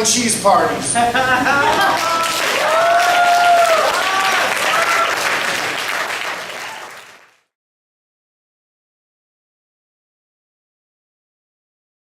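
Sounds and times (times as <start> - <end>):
audience applauding: 1.8 - 7.5
cheering whoops: 2.0 - 7.1.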